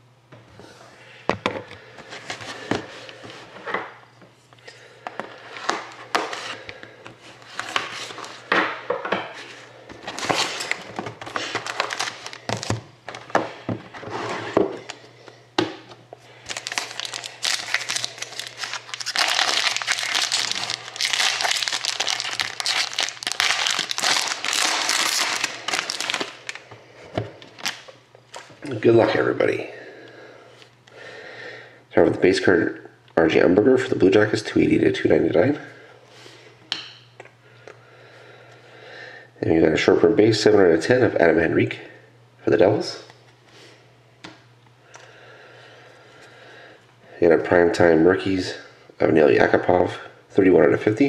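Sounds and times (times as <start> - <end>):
plastic wrapping crinkling: 9.9 - 13.3, 16.4 - 26.8, 27.5 - 28.5.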